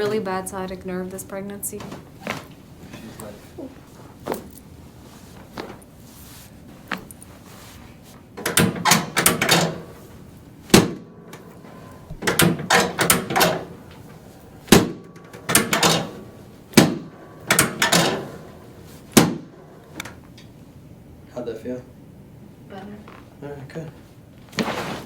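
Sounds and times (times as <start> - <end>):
joints cracking: 11.3 - 20.5.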